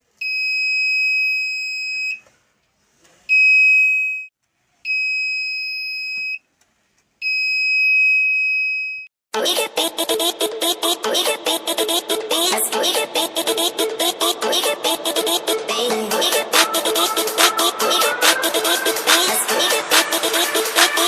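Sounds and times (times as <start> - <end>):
electronic dance music: 9.4 - 21.0.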